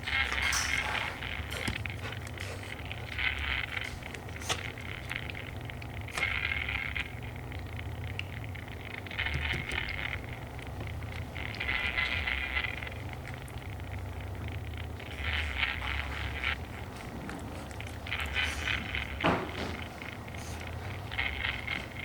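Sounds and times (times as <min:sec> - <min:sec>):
steady low hum: 0:00.0 - 0:22.0
dog breathing raspily: 0:00.1 - 0:05.2.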